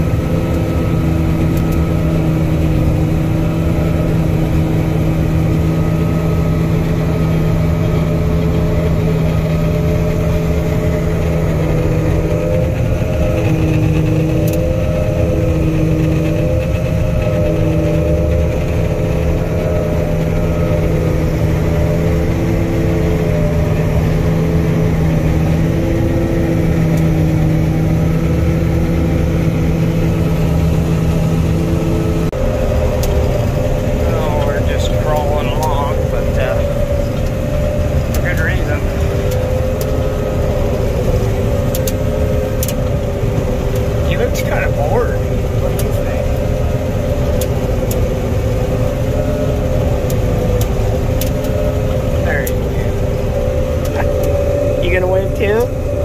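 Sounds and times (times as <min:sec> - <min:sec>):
combine harvester engine hum: 0:00.0 - 0:56.0
wavering machine tones: 0:00.0 - 0:56.0.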